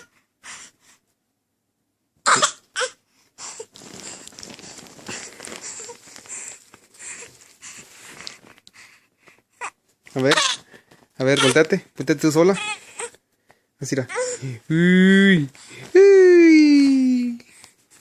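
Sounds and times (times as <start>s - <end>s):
baby fake coughing: 2.2s - 3.0s.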